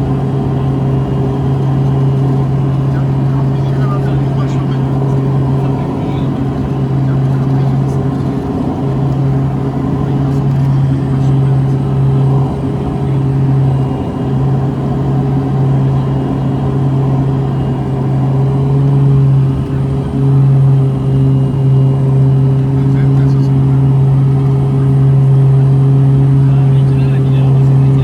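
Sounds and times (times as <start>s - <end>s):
turboprop engines droning: 0.0s - 28.0s.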